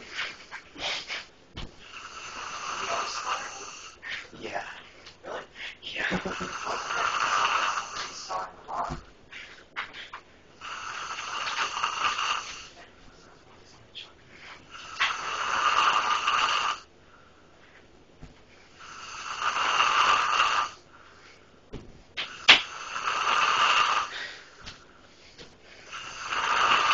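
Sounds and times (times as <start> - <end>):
person snoring loudly: 1.8 - 3.9, 6.1 - 8.4, 10.6 - 12.7, 14.7 - 16.9, 18.8 - 20.8, 22.3 - 24.2, 25.8 - 26.9.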